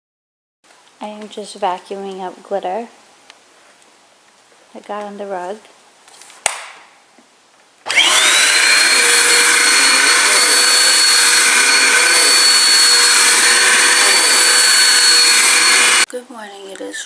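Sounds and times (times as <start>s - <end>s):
vacuum cleaner motor whine: 7.9s - 16.1s.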